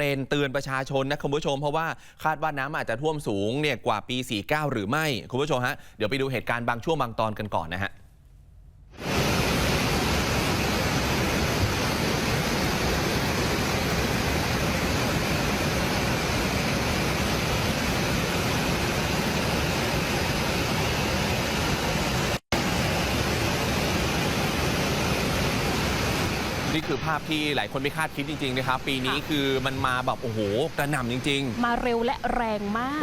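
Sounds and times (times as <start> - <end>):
floodwater rushing: 9.0 - 33.0.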